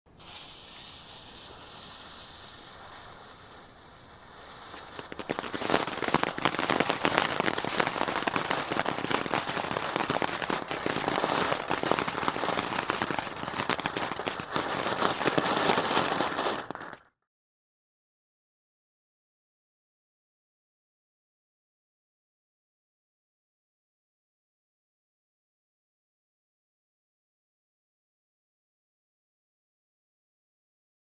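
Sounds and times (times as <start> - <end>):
firework fountain hissing and crackling: 0.1 - 17.1.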